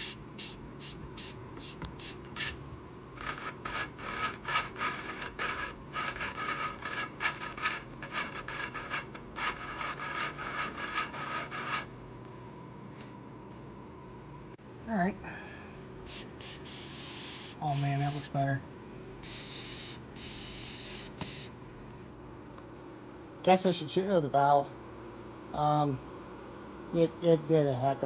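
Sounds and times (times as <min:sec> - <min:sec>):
valve lapping gritty scraping: 0:03.2 - 0:11.9.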